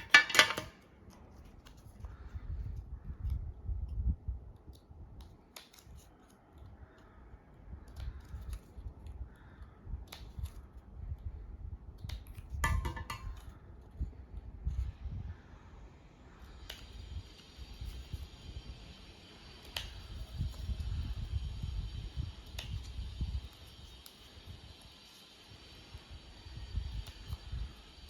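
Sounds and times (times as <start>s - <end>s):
paper clicks and rustles: 0.0s - 3.4s, 4.6s - 7.2s.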